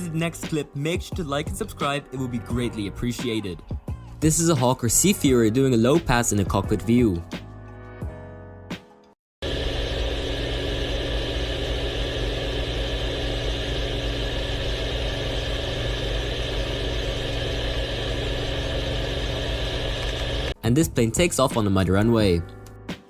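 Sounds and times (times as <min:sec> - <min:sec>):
piston aircraft engine drone: 0:09.4 - 0:20.6.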